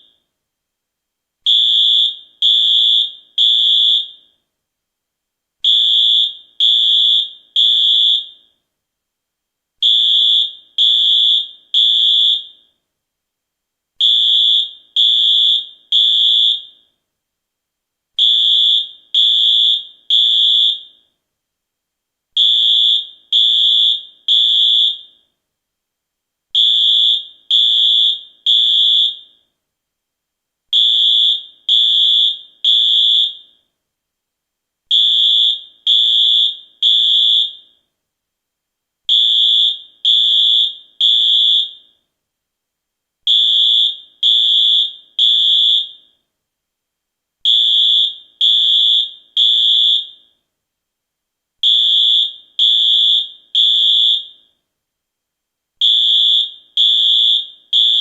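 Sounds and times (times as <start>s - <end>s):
fire alarm beeping: 1.5s - 4.4s, 5.7s - 8.6s, 9.8s - 12.8s, 14.0s - 16.9s, 18.2s - 21.1s, 22.4s - 25.3s, 26.6s - 29.4s, 30.8s - 33.7s, 34.9s - 37.8s, 39.1s - 42.0s, 43.3s - 46.2s, 47.5s - 50.4s, 51.6s - 54.6s, 55.8s - 58.0s.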